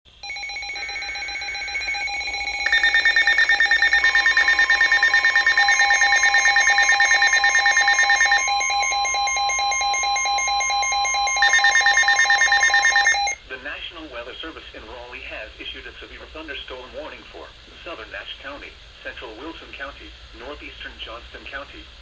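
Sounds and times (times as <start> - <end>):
rapid beeping: 0.1 - 13.4
steady warning tone: 0.1 - 13.4
electronic alarm tones: 0.2 - 13.4.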